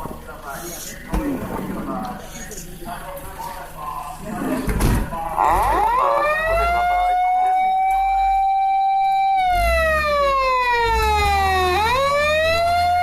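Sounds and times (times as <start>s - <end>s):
emergency siren wailing: 5.3s - 13.0s.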